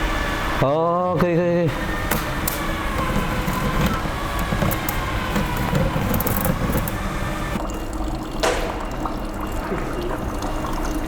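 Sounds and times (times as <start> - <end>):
electric drill running: 1.7 - 7.6.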